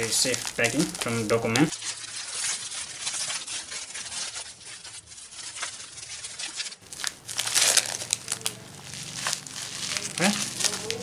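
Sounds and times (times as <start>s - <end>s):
plastic packaging crinkling: 0.0s - 1.8s, 6.8s - 11.0s.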